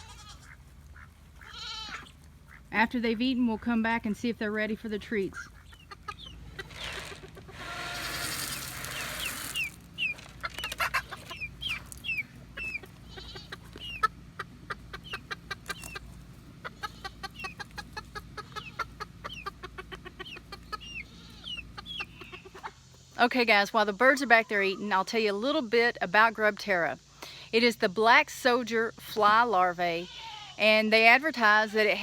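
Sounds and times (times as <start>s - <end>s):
hens clucking: 0.0s - 23.2s, 23.8s - 25.1s
hens pecking feed: 0.0s - 23.2s
rushing hiss: 7.5s - 9.8s.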